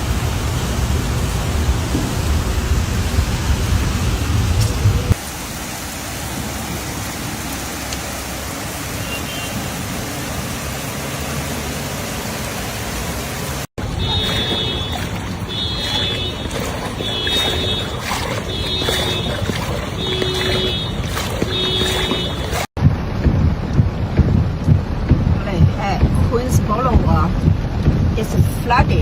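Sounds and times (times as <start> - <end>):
heavy rain: 0.0 - 22.7
running floodwater: 5.1 - 22.8.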